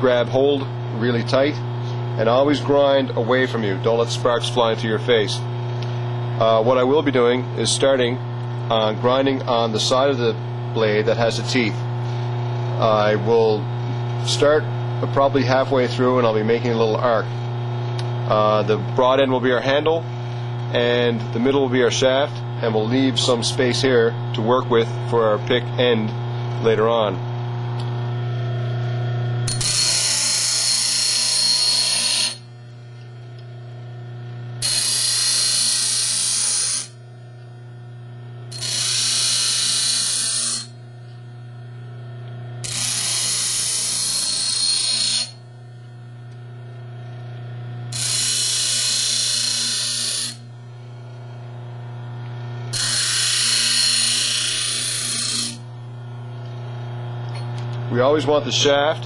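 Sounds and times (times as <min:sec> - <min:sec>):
bench grinder motor humming: 0:00.0 - 0:59.0
metal blade grinding on wheel: 0:29.5 - 0:32.5, 0:34.6 - 0:37.0, 0:38.5 - 0:40.8, 0:42.6 - 0:45.4, 0:47.9 - 0:50.5, 0:52.7 - 0:55.6.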